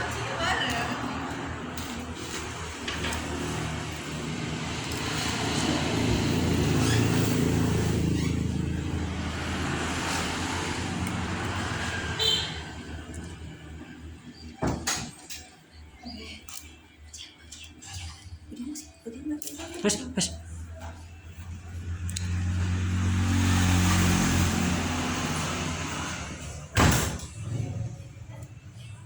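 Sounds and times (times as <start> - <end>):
vehicle passing with low rumble: 0.0 - 14.6, 20.4 - 29.0.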